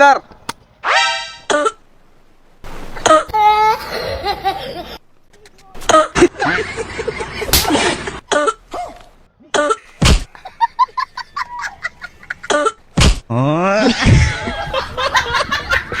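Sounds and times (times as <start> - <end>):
comic coughing: 5.8 - 6.5.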